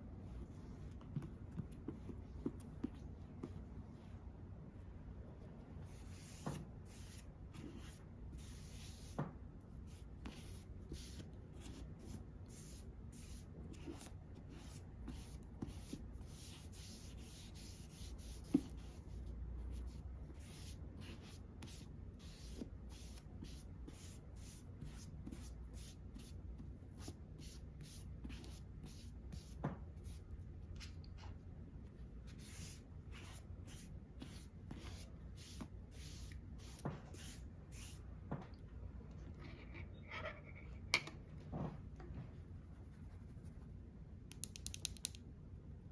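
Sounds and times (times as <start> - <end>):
soft rubbing strokes of makeup: 41.8 - 44.0.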